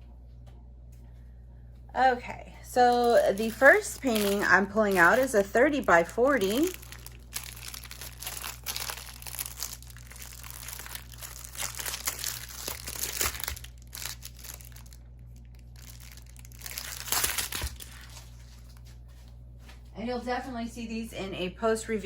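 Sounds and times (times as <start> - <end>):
plastic packaging crinkling: 2.7 - 19.0.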